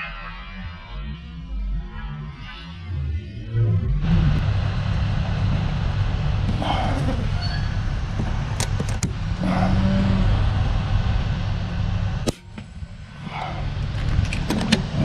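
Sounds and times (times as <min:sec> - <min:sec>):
wind rumbling on microphone: 0:03.9 - 0:15.0.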